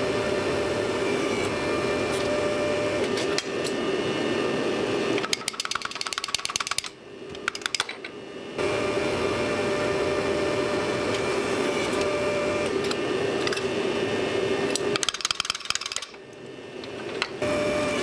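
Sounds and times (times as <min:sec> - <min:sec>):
power tool running: 0:00.0 - 0:05.3, 0:08.6 - 0:16.1, 0:17.0 - 0:18.0.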